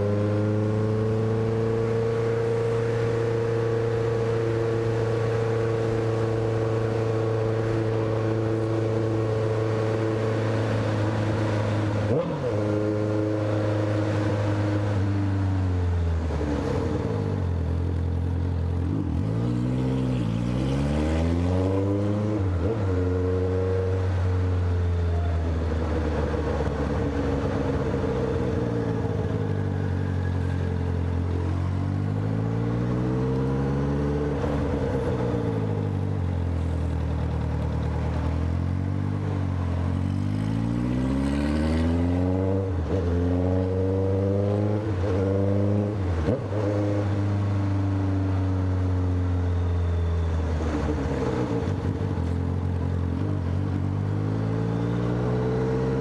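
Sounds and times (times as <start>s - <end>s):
motorcycle engine revving: 0.0s - 17.7s, 18.3s - 56.0s.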